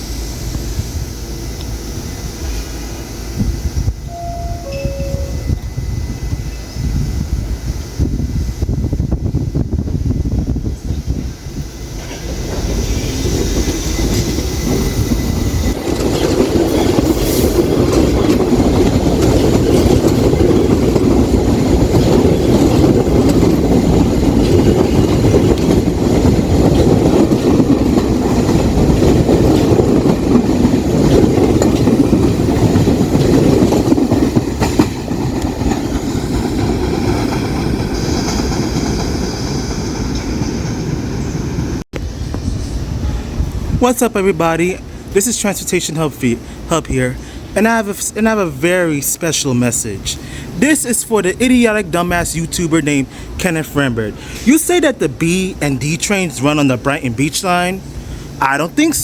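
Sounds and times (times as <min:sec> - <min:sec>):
subway train rumble: 0:00.0 - 0:59.0
faint high whine: 0:03.8 - 0:07.3.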